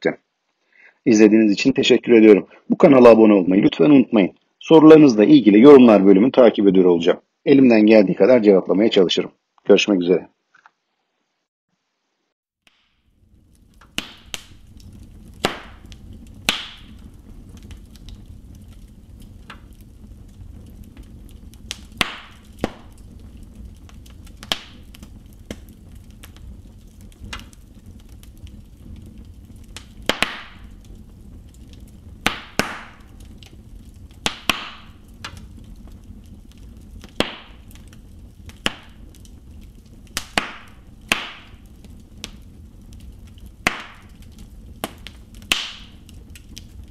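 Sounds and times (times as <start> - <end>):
burning logs crackling: 12.6 - 46.9
low rush of flames: 12.7 - 46.9.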